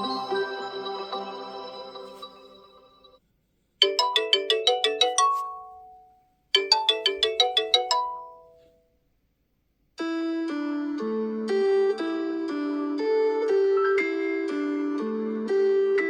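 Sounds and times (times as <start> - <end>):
chime-like phone ringtone: 0.0 - 3.2, 3.8 - 8.7
ringtone with sustained tones: 0.0 - 3.2, 3.8 - 8.7.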